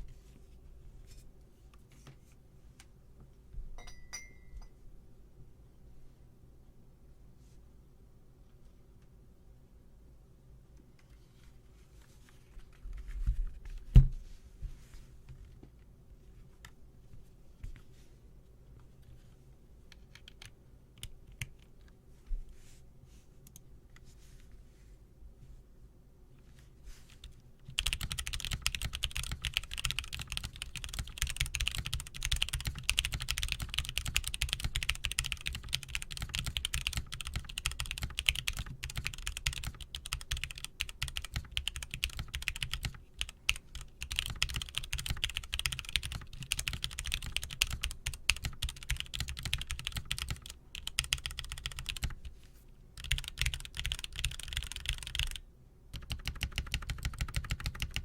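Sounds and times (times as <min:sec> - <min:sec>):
mechanical keyboard typing: 0:20.0 - 0:21.7, 0:27.7 - 0:52.3, 0:53.0 - 0:58.0.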